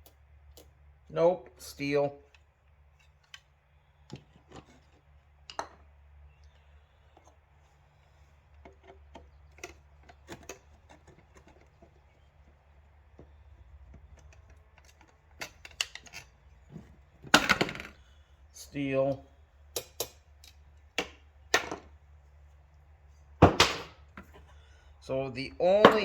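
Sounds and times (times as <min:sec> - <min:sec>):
faint low hum: 0:00.0 - 0:26.0
metal and plastic parts clicking: 0:08.5 - 0:12.0, 0:13.2 - 0:16.5.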